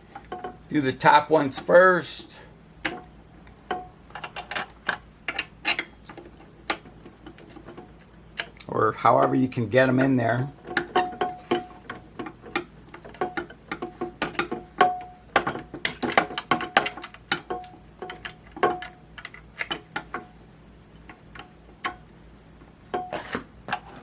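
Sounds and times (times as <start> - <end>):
clicks and knocks of rollers: 3.7 - 22.1.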